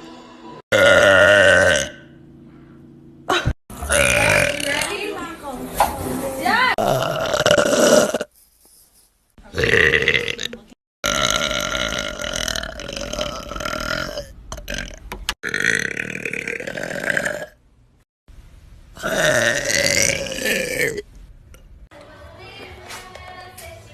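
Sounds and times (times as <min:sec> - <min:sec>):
girls belching: 0:00.7 - 0:02.0, 0:03.8 - 0:05.1, 0:06.8 - 0:08.3, 0:09.5 - 0:17.5, 0:19.0 - 0:21.0.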